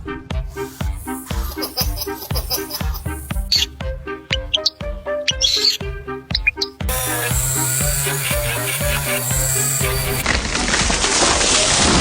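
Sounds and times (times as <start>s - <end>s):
background music with steady beat: 0.0s - 10.3s.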